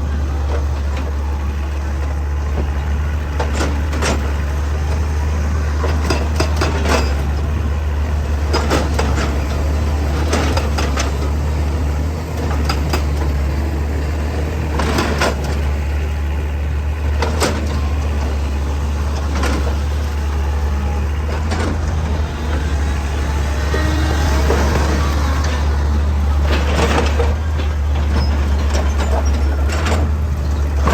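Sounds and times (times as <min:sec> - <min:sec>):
excavator engine running: 0:00.0 - 0:30.9.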